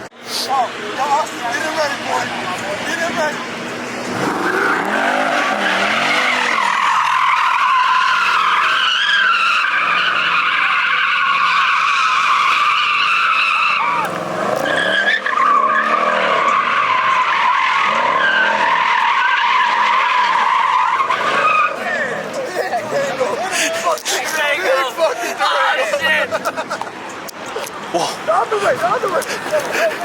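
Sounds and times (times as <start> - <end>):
car tyres squealing: 0.0 - 30.0
car engine revving: 0.5 - 22.4.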